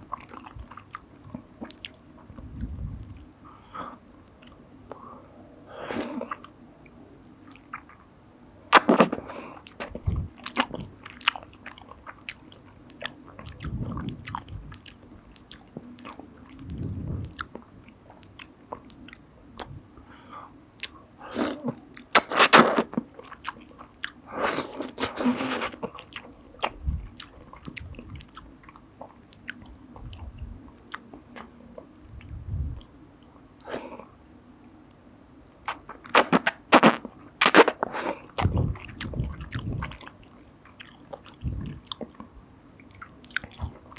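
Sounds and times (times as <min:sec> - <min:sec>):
wet chewing: 0:08.7 - 0:19.8, 0:20.8 - 0:31.5, 0:35.7 - 0:43.9
noodle slurping: 0:21.3 - 0:23.0, 0:24.3 - 0:26.0, 0:36.1 - 0:40.0.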